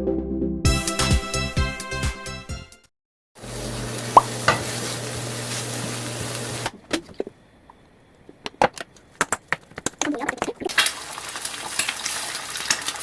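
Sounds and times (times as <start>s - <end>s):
food sizzling in a frying pan: 3.4s - 6.7s, 10.7s - 13.0s.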